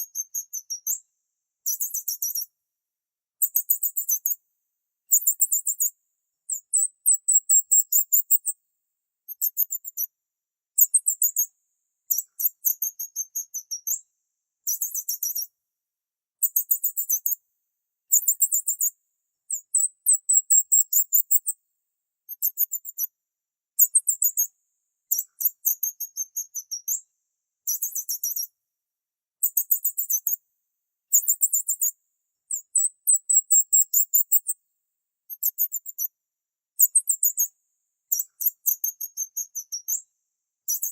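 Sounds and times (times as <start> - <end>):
high-pitched bird chirping: 1.7 - 2.4, 6.5 - 8.5, 19.5 - 21.5, 32.5 - 34.6.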